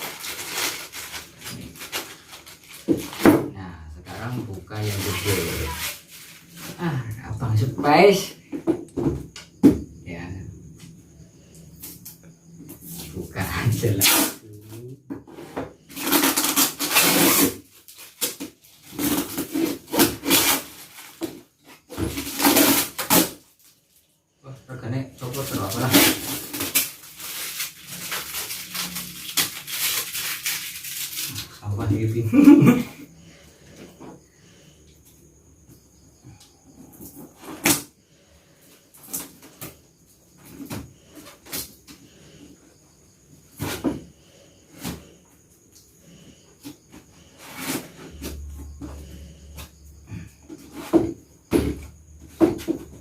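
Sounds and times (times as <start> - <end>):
parcel packaging tearing: 0.0 - 3.1, 4.8 - 6.4, 16.0 - 21.2, 25.5 - 31.6
crickets chirring: 0.0 - 53.0
cardboard packaging knocks and scrapes: 50.5 - 53.0.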